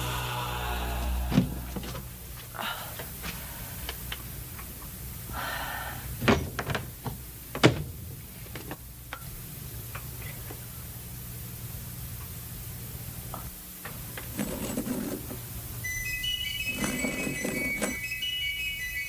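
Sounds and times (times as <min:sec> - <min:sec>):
steady low hum: 0:00.0 - 0:06.2.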